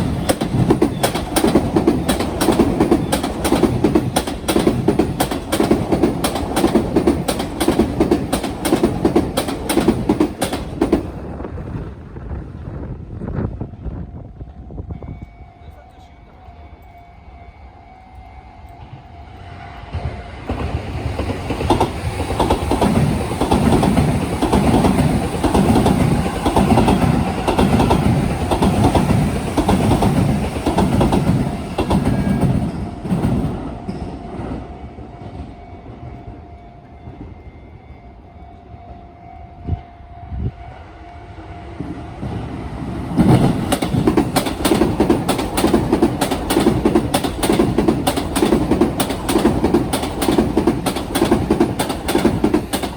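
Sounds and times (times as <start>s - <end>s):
train wheels clickety-clack: 0.0s - 11.9s, 19.9s - 36.2s, 41.8s - 52.9s.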